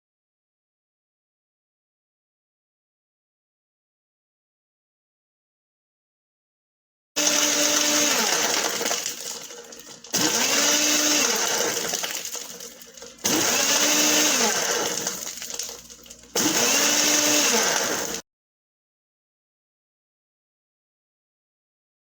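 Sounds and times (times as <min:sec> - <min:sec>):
blender motor whining: 0:07.2 - 0:18.2.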